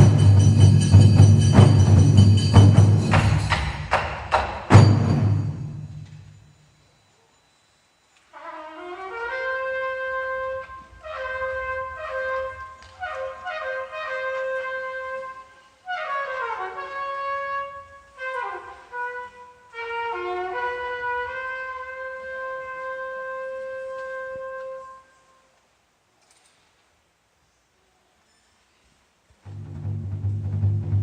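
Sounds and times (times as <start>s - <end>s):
marching band brass playing: 0.0s - 6.0s, 8.3s - 25.1s.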